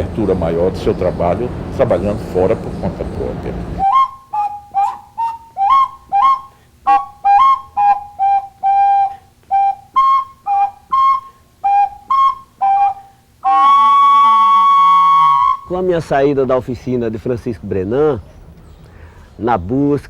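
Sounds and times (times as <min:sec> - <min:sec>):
ocarina notes: 0:03.7 - 0:16.6.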